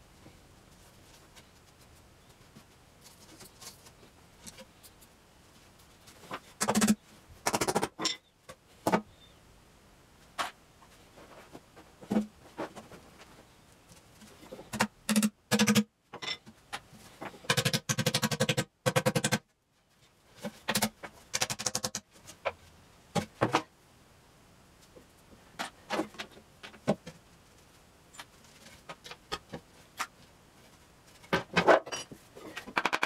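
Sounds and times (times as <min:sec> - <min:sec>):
sharp clicks and knocks: 0:14.7 - 0:15.9, 0:32.6 - 0:33.0.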